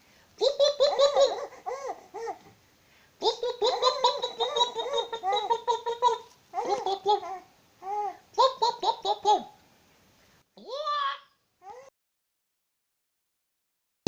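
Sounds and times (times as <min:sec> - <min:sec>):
baby laughing: 0:00.4 - 0:02.5, 0:03.2 - 0:09.6.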